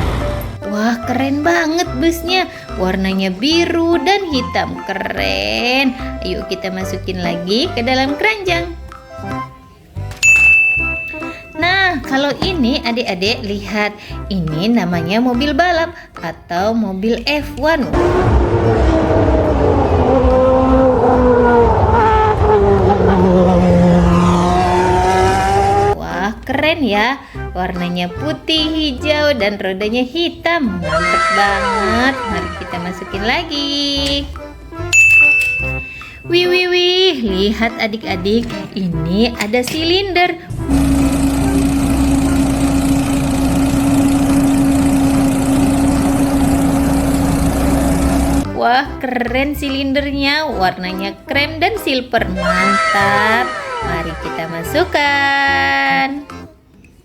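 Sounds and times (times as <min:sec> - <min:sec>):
racing car engine revving: 0:18.0 - 0:26.0, 0:40.5 - 0:48.5
road roller engine idling: 0:40.5 - 0:48.5.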